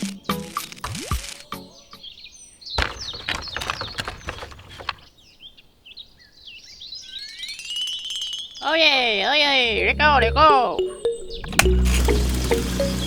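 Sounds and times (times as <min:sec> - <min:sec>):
small birds chirping: 0:01.4 - 0:13.0
clicks and knocks: 0:02.8 - 0:05.0.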